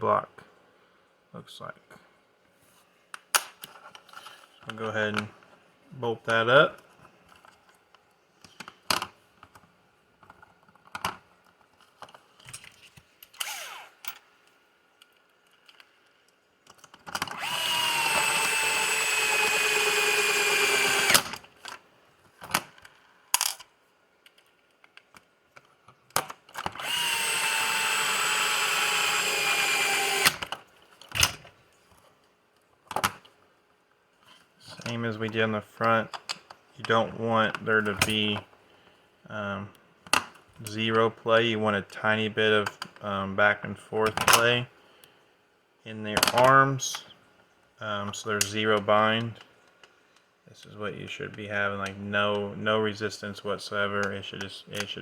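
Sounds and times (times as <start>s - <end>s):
electric power driver whining: 13.4s - 14.1s, 17.3s - 21.4s, 26.7s - 30.6s.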